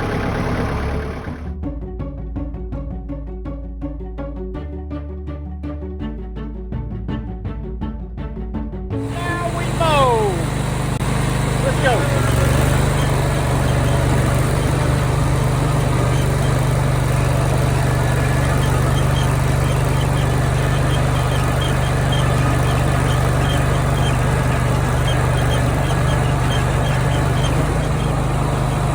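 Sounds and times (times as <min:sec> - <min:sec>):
engine running steadily: 0:00.0 - 0:01.6, 0:09.0 - 0:28.9.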